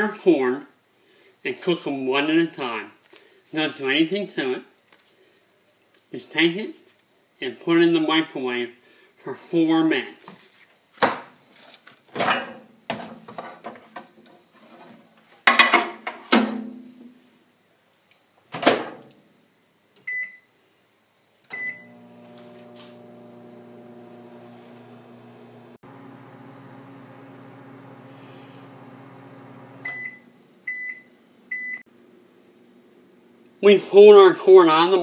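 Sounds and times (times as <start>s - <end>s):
microwave oven humming: 21.5s - 33.5s.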